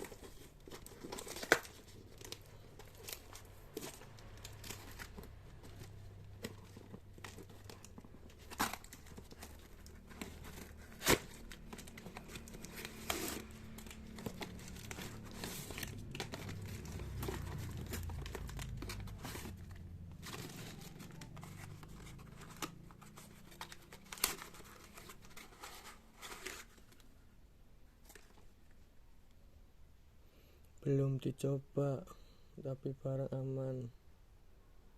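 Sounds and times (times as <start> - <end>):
packaging crinkling and tearing: 0.0 - 27.2.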